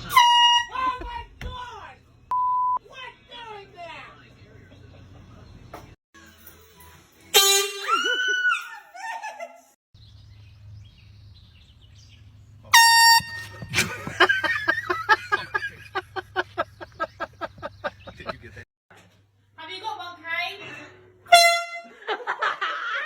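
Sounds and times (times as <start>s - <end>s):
air horn blasts: 0.0s - 0.9s, 7.3s - 8.0s, 12.7s - 14.0s, 21.3s - 22.0s.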